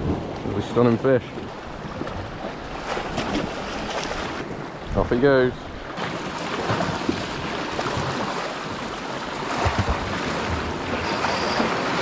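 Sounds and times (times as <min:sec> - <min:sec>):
sea surf washing against rocks: 0:06.0 - 0:12.0.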